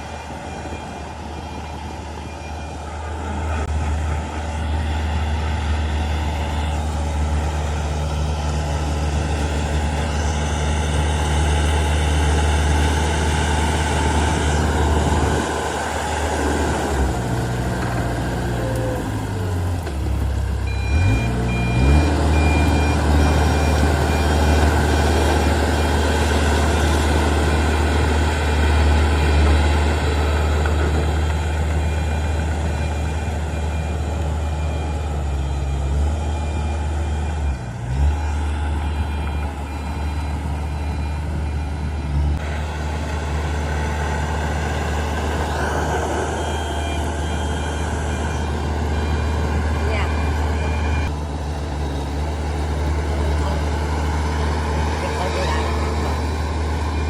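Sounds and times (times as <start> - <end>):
reversing alarm beeping: 0.0 - 3.7, 20.6 - 57.0
diesel engine under load: 0.0 - 57.0.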